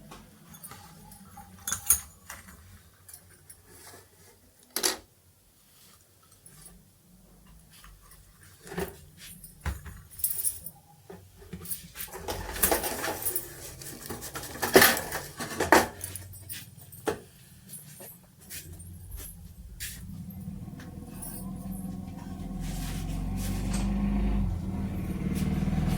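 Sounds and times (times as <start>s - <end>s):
metal tools clinking and knocking: 0.5s - 3.6s, 11.6s - 22.1s.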